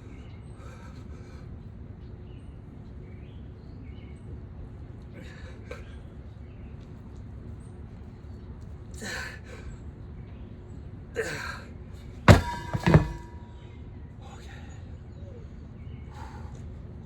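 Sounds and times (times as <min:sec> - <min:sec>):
heavy steel wheel clanking down: 0:12.3 - 0:13.6.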